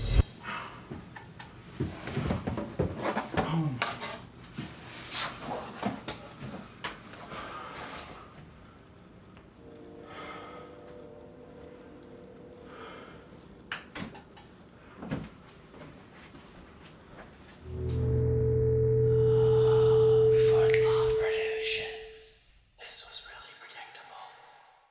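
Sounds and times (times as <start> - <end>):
muffled voice: 19.2 - 22.3.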